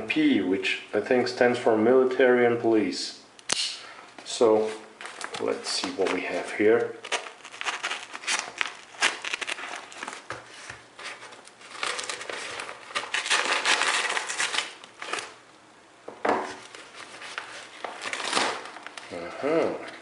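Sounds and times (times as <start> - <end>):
packaging crinkling and rustling: 5.0 - 15.4, 16.3 - 20.0.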